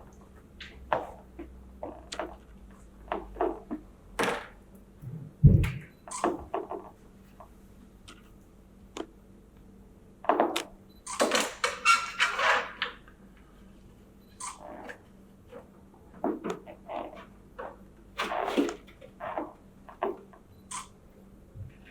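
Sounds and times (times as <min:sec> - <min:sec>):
heavy thump: 0:05.0 - 0:05.9
knocks and clunks: 0:05.0 - 0:06.6.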